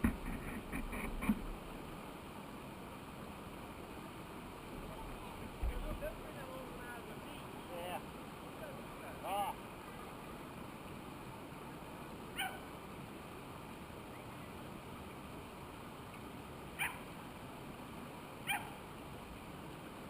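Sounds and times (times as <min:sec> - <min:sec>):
dog barking: 0:12.4 - 0:12.6, 0:16.8 - 0:17.0, 0:18.5 - 0:18.8.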